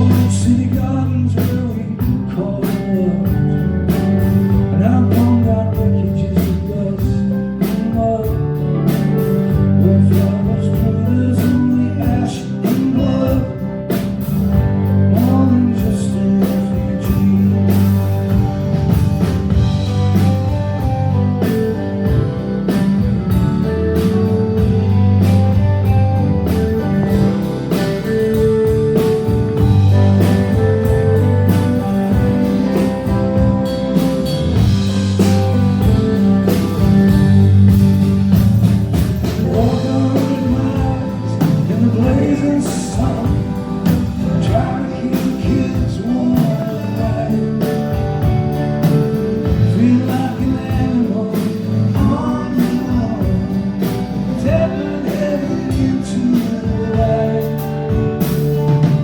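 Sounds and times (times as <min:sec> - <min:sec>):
lead vocal singing: 0:00.0 - 0:18.6, 0:39.2 - 0:48.5, 0:49.3 - 0:58.4
live rock band playing: 0:00.0 - 0:59.0.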